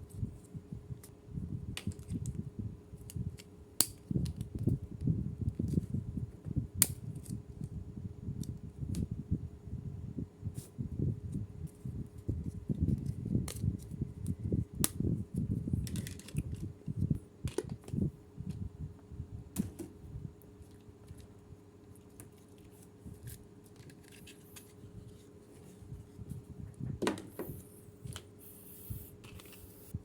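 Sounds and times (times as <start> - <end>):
faint steady hum: 0.0 - 30.0
plastic toy pieces being handled: 15.8 - 18.0, 22.0 - 25.8.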